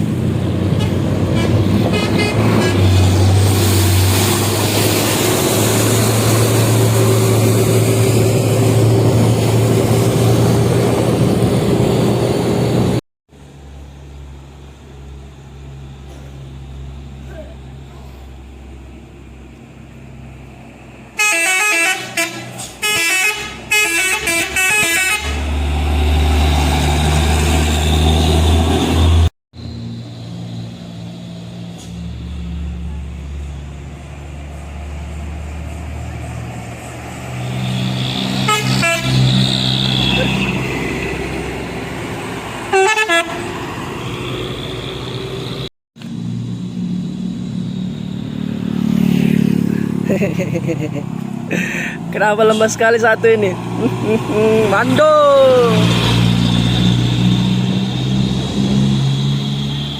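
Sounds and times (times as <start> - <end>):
traffic noise: 0.0 - 59.9
truck horn playing a tune: 0.7 - 3.0, 21.2 - 25.6, 38.3 - 40.6, 42.7 - 43.6.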